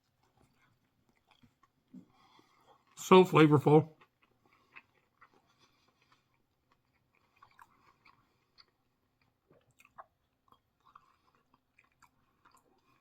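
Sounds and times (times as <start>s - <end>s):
faint chewing with crunches: 0.0s - 13.0s.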